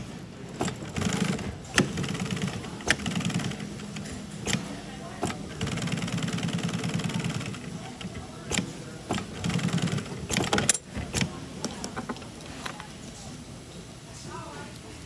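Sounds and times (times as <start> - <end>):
sewing machine stitching: 0.6 - 11.4.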